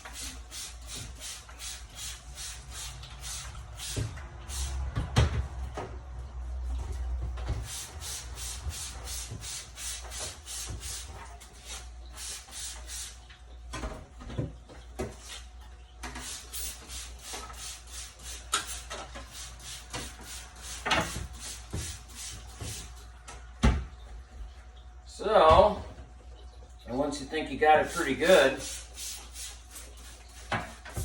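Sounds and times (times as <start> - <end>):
hand scrubbing: 27.6 - 30.5.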